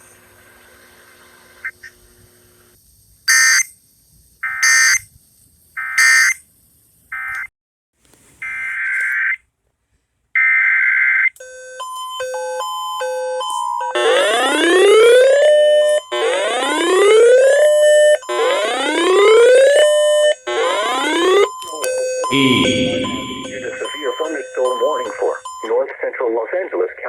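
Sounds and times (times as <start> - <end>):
electronic beeping tones: 22.3 - 24.3.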